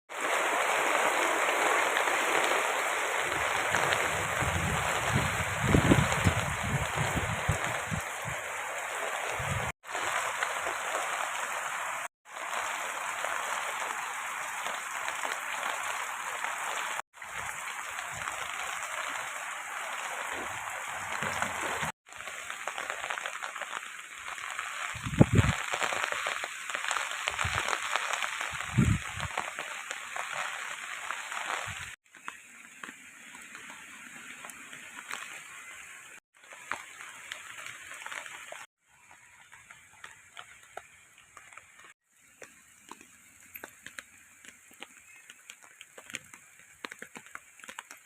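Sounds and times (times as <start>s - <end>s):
steady rain falling: 0.1s - 48.0s.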